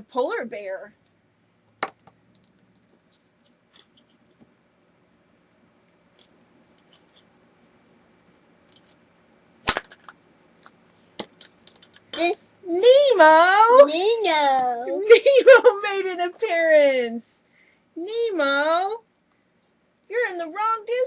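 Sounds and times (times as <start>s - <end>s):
plastic egg snapping open: 9.7s - 12.0s
plastic toys clicking: 9.7s - 12.2s.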